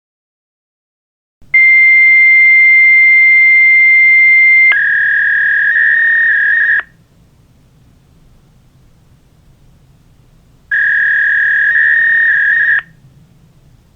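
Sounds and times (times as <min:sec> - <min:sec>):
fluttering fax data tone: 0:01.6 - 0:06.9, 0:10.7 - 0:13.0
fax machine answer tone: 0:04.6 - 0:06.9, 0:10.7 - 0:12.9.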